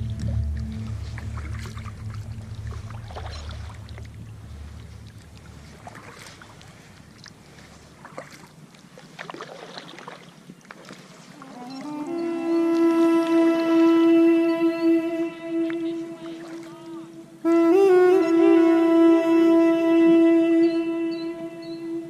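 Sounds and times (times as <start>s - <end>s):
background music: 0.0s - 3.2s
kayak paddle splashing water: 0.0s - 11.9s, 12.6s - 17.2s
water trickling and dripping: 0.0s - 22.0s.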